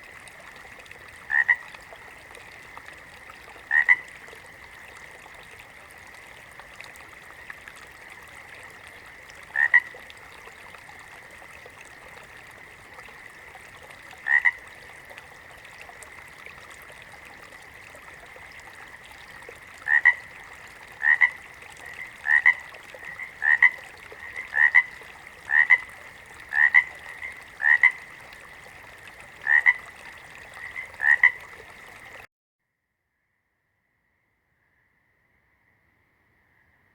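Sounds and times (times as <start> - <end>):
frog croaking: 1.2 - 5.0, 7.0 - 11.1, 12.2 - 17.0, 17.6 - 32.2.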